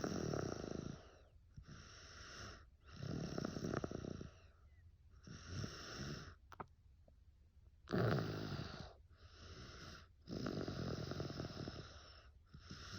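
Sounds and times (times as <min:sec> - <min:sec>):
boy snoring: 0:00.0 - 0:01.1, 0:01.8 - 0:04.4, 0:07.9 - 0:12.9.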